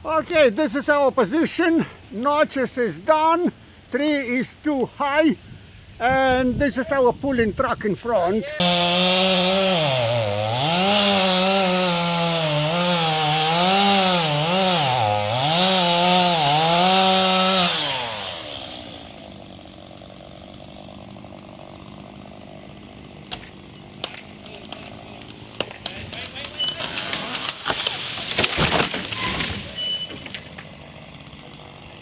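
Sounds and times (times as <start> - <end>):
chainsaw cutting wood: 8.6 - 32.0.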